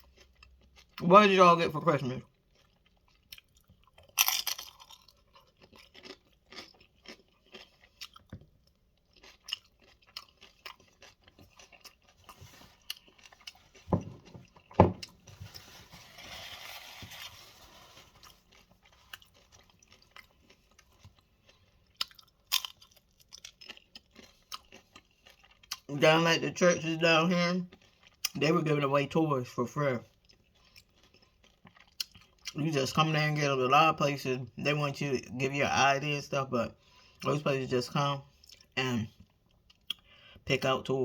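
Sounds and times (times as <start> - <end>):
crunchy chewing: 2.2 - 25.9, 30.0 - 32.6.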